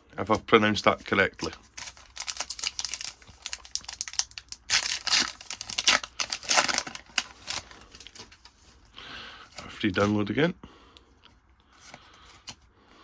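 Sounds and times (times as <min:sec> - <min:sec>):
foil wrapper tearing and crinkling: 0:01.4 - 0:08.4.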